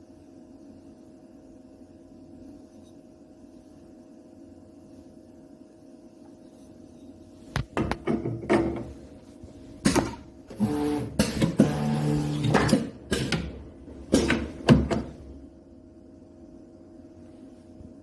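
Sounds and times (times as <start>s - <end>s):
machine hum: 0.0s - 18.0s
buzzing motor: 10.5s - 12.7s.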